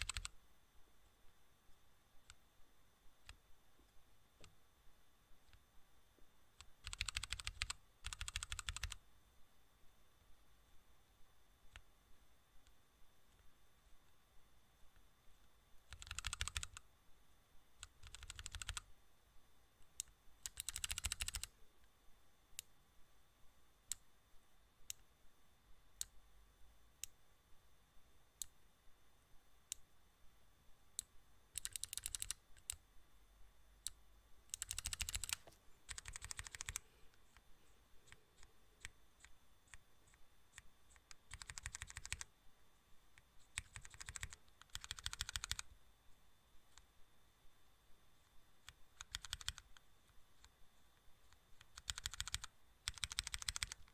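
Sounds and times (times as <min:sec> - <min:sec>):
faint rapid clicks: 0:00.0 - 0:00.3, 0:06.6 - 0:09.0, 0:15.9 - 0:16.8, 0:17.8 - 0:18.8, 0:19.8 - 0:21.5, 0:31.0 - 0:32.8, 0:33.8 - 0:42.3, 0:43.2 - 0:45.7, 0:48.6 - 0:53.9.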